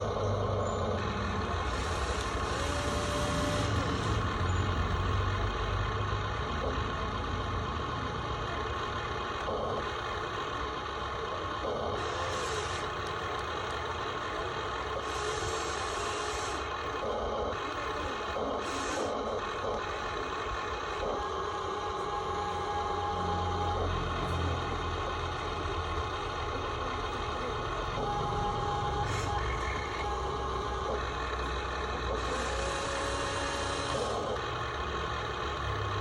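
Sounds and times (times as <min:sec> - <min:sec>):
short rising and falling whines: 0:00.0 - 0:05.6, 0:17.7 - 0:34.4
excavator engine drone with whine: 0:00.0 - 0:36.0.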